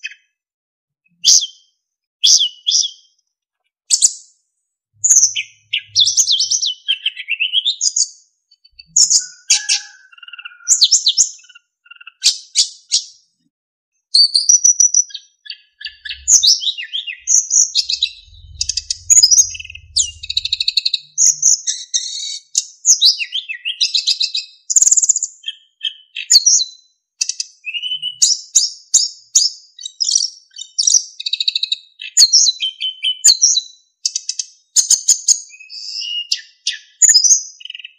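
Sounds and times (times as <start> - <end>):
small bird singing: 0.0 - 0.4, 1.1 - 3.2, 3.9 - 4.4, 5.0 - 37.9.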